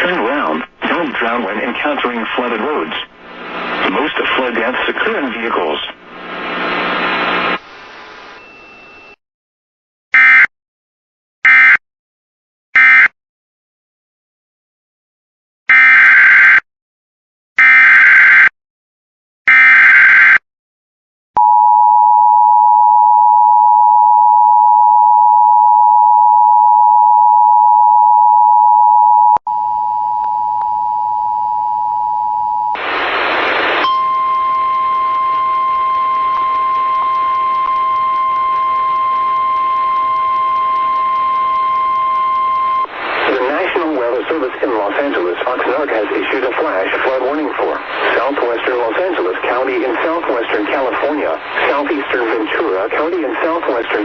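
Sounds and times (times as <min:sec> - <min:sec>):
broadcast hiss: 0:00.0 - 0:09.1, 0:32.8 - 0:54.0
steady two-tone attention signal: 0:33.8 - 0:43.5
steady warning tone: 0:33.8 - 0:44.6.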